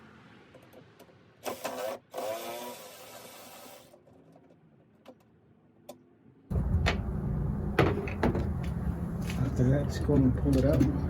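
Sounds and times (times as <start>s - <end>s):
loud low rumble: 6.5s - 10.0s.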